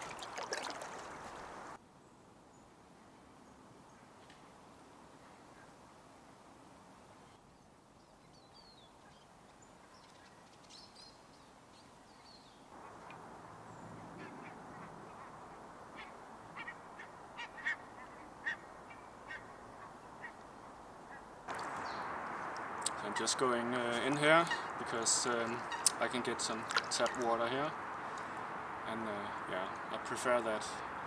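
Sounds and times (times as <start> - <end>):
geese honking: 21.1 - 28.5.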